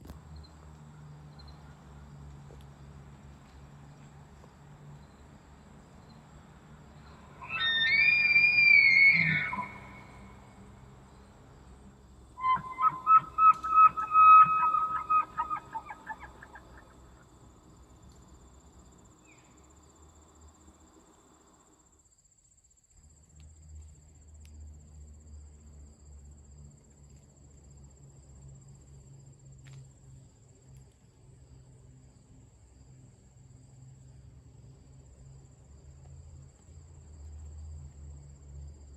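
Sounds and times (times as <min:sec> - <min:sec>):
elk bugling: 0:07.0 - 0:10.7, 0:12.4 - 0:17.2.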